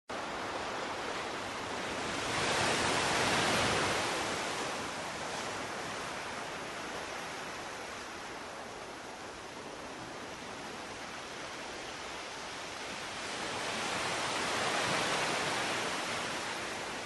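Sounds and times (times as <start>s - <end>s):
ocean surf: 0.1s - 17.0s.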